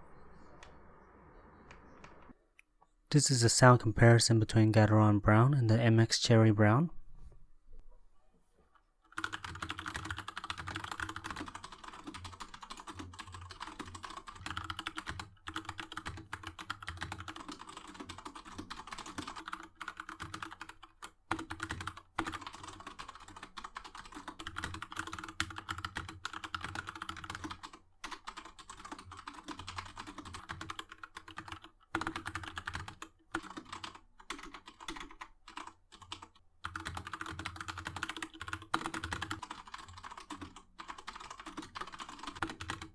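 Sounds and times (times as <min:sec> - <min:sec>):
mechanical keyboard typing: 0:09.1 - 0:42.9.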